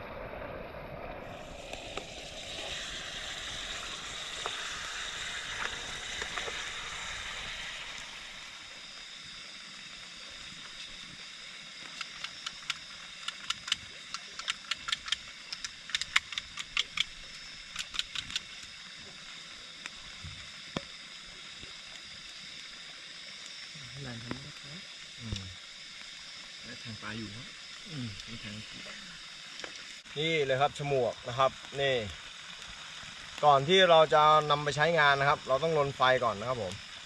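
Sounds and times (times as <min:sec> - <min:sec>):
water hissing: 0:00.0 - 0:37.0
sharp irregular clicks: 0:11.9 - 0:18.7.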